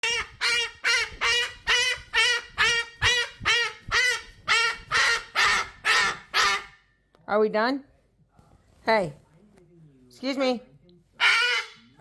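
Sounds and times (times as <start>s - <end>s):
cockatoo screaming: 0.0s - 6.8s, 11.2s - 11.8s.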